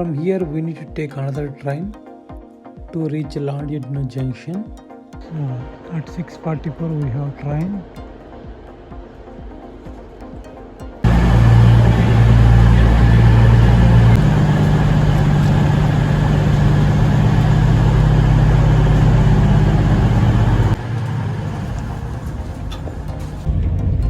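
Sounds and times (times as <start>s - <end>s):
diesel train engine drone: 11.0s - 23.5s.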